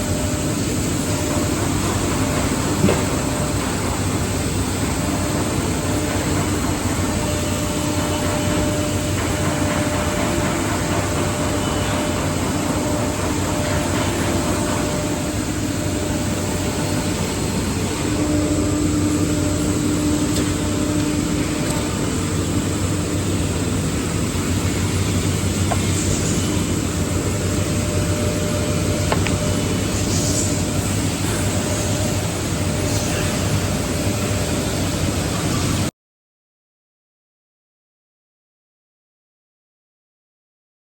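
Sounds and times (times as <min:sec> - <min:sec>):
spindle whine: 0:00.0 - 0:35.9
wood router machine running: 0:05.2 - 0:35.1.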